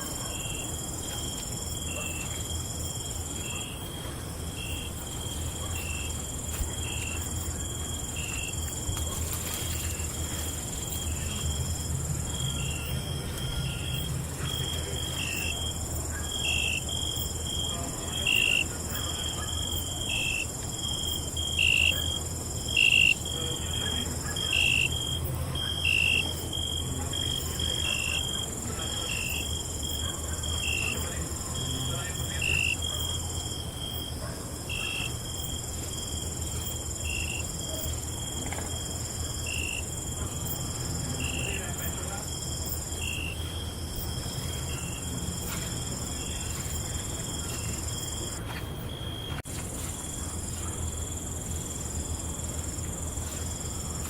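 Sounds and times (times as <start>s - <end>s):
crickets trilling: 0.0s - 54.0s.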